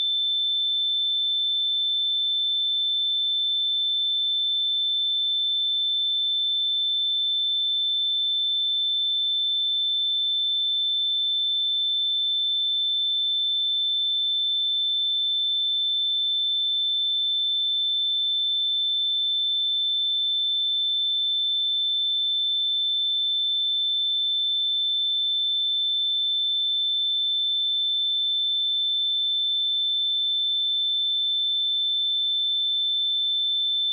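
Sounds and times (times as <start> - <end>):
high-pitched sine-wave test tone: 0.0 - 33.9.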